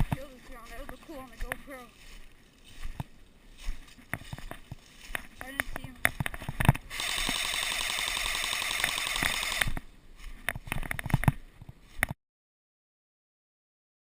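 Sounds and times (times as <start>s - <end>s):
airsoft gun full-auto burst: 6.9s - 9.8s.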